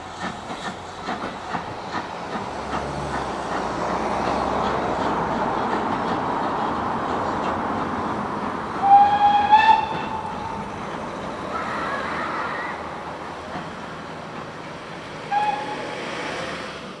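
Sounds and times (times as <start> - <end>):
train running: 0.0 - 17.0
steam locomotive whistle: 8.7 - 13.5, 15.2 - 16.6.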